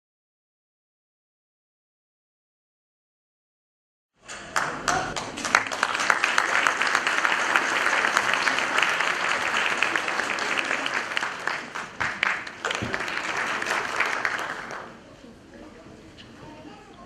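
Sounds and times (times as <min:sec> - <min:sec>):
audience applauding: 0:04.5 - 0:15.0.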